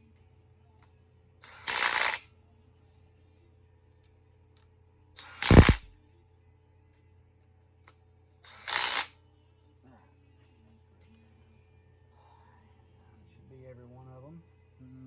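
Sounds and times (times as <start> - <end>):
power tool bursts: 1.4 - 2.2, 5.2 - 5.9, 8.5 - 9.1.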